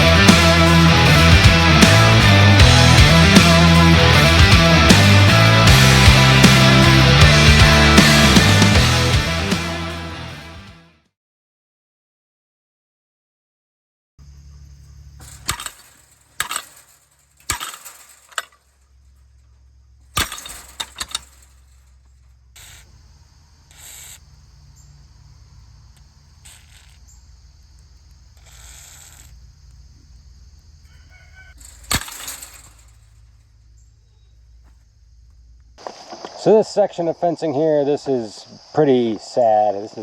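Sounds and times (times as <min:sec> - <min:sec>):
steady high drone: 0:00.0 - 0:10.4
rustling: 0:14.5 - 0:36.5.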